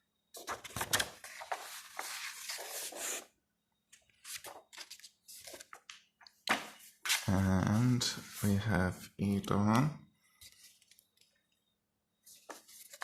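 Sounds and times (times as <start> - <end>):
pages turning: 0.4 - 3.3, 4.2 - 7.4, 10.4 - 11.3, 12.3 - 13.0
paper and card rustling: 0.4 - 3.3, 4.2 - 8.6, 12.3 - 13.0.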